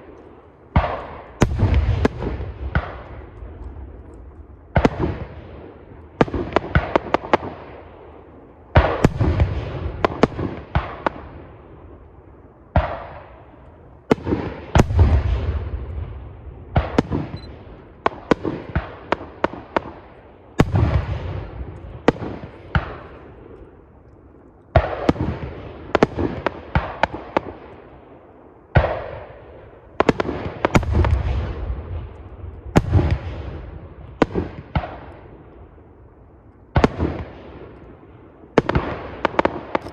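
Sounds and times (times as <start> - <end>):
sharp crackling: 38.6 - 39.9.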